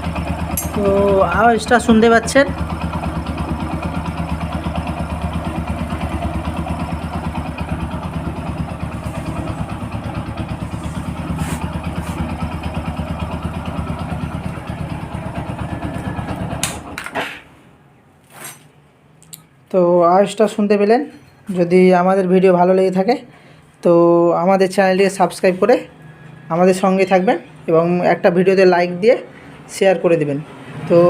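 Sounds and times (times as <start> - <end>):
motorcycle engine idling: 0.0 - 17.0.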